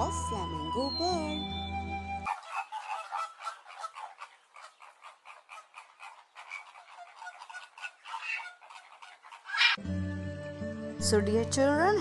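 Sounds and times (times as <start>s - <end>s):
flamingos calling: 2.2s - 9.8s.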